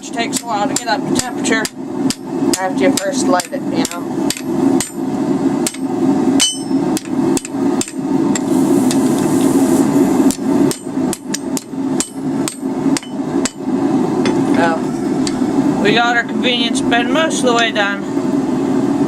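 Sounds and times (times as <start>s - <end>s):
gas forge roaring: 0.0s - 19.0s
hammer striking steel on anvil: 5.6s - 8.5s, 10.3s - 13.6s.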